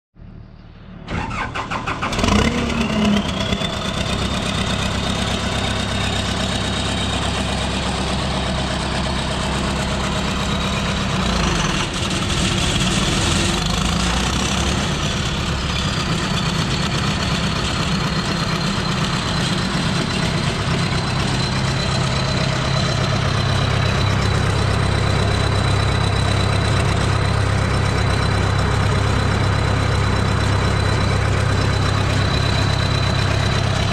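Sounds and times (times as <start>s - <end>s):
high whine: 0.2s - 14.0s
wood chipper engine running: 1.1s - 33.9s.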